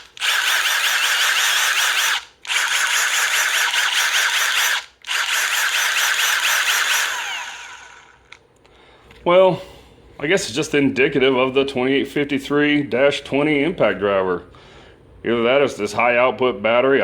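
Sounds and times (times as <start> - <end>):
impact driver motor whine: 0.0 - 8.4.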